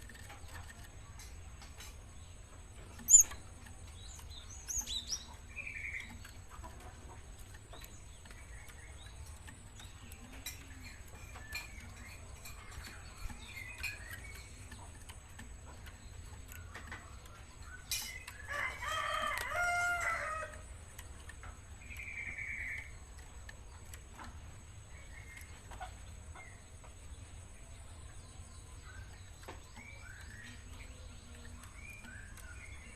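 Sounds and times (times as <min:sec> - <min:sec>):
sparrow chirping: 0:00.0 - 0:32.9
rooster crowing: 0:18.5 - 0:20.6.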